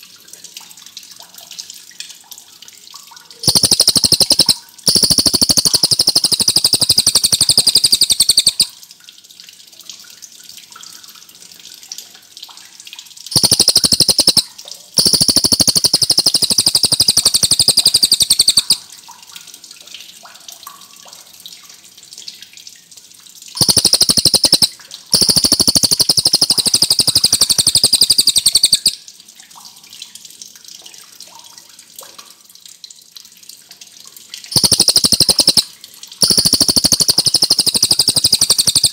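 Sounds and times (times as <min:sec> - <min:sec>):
bird singing rapid high trills: 0:03.4 - 0:08.7, 0:13.3 - 0:14.4, 0:15.0 - 0:18.8, 0:23.6 - 0:29.0, 0:34.5 - 0:35.6, 0:36.2 - 0:38.9
faint bird chirps: 0:23.6 - 0:29.0.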